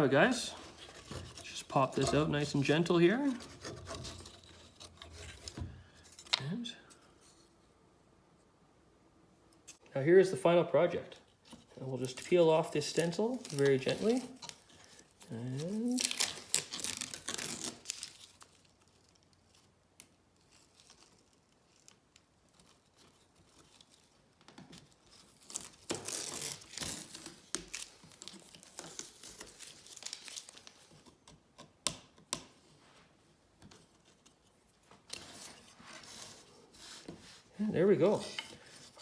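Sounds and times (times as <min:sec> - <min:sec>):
paper tearing and crinkling: 0:11.9 - 0:19.7, 0:24.8 - 0:31.1.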